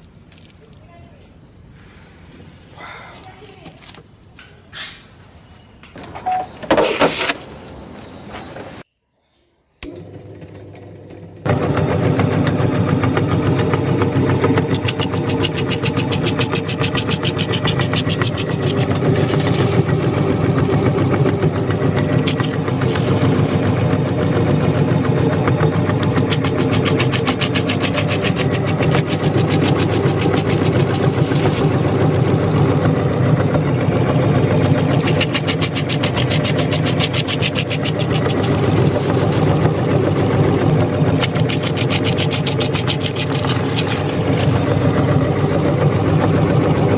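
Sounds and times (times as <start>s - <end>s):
electric grinder rattling: 9.8s - 46.9s.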